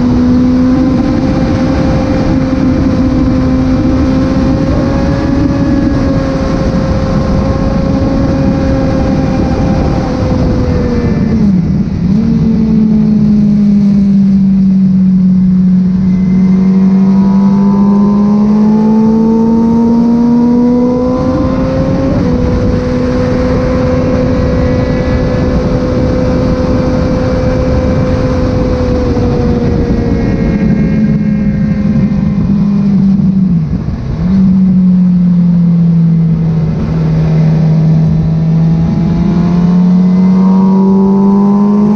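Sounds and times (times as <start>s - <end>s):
motorcycle engine running: 0.0s - 41.9s
wind rush: 0.0s - 41.9s.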